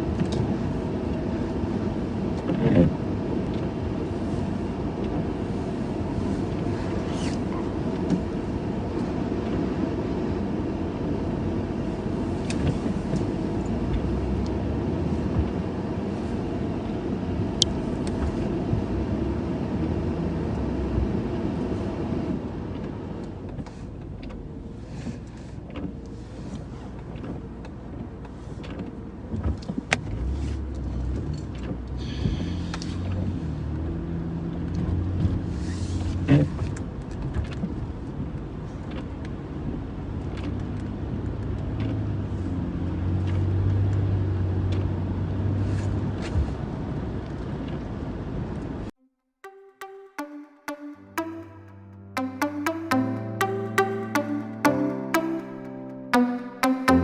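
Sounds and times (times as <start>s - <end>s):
vehicle road and engine noise: 13.2s - 24.6s, 29.4s - 37.3s, 37.9s - 48.8s.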